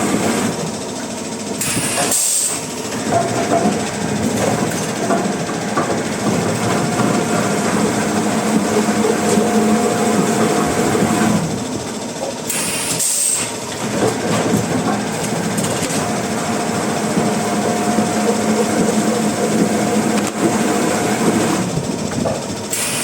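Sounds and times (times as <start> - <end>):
sawmill machinery humming: 0.0 - 23.0.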